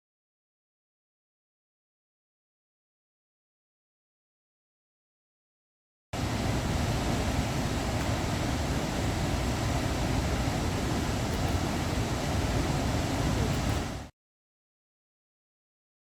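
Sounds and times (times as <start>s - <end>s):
waterfall rushing: 6.2s - 14.1s.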